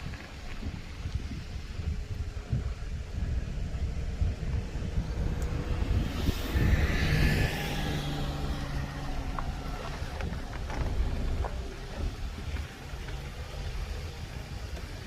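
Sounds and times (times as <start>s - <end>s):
wind rumble on microphone: 0.0s - 15.0s
motor vehicle passing: 3.7s - 14.0s.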